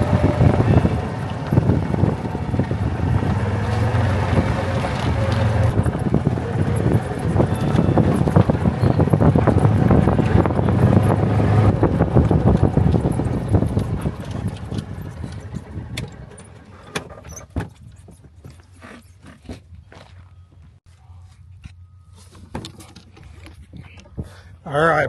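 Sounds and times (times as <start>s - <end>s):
wind buffeting microphone: 0.0s - 16.6s
golf cart rumble and rattle: 0.0s - 20.3s, 21.5s - 25.0s.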